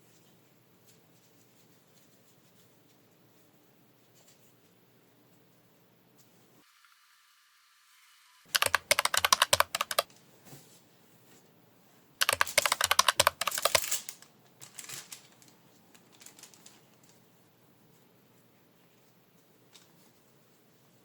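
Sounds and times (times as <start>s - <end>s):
rapid sharp clicking: 8.5s - 10.1s, 12.2s - 14.1s.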